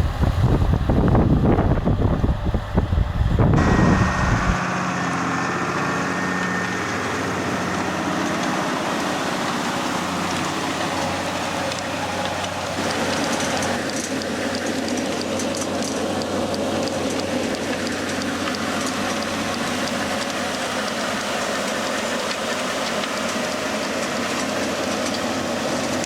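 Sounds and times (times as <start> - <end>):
gusty wind on microphone: 0.0 - 4.6
machinery: 0.0 - 26.0
tractor diesel engine running: 0.0 - 26.0.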